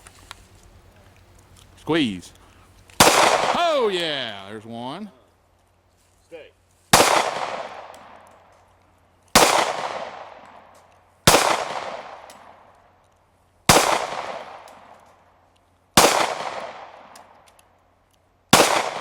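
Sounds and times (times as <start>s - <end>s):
pistol shots with echo: 3.0s - 3.9s, 7.0s - 8.3s, 9.4s - 10.5s, 11.3s - 12.6s, 13.7s - 14.7s, 16.0s - 17.2s, 18.5s - 19.0s.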